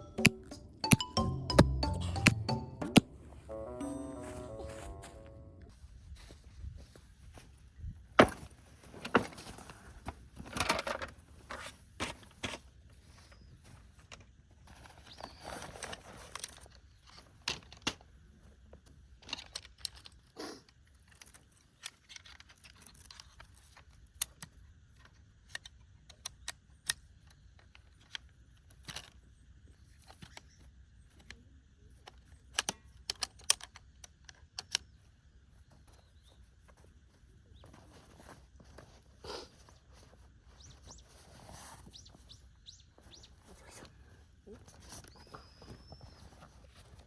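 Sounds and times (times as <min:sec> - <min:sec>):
rustling: 0:35.7 - 0:47.0.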